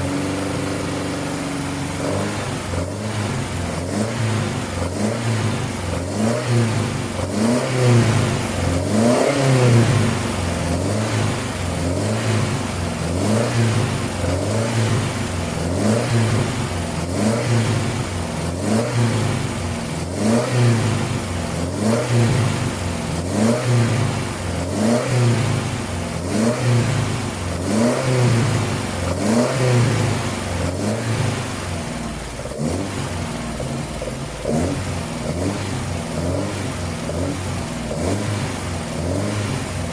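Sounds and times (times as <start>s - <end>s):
car engine revving: 0.0s - 39.9s.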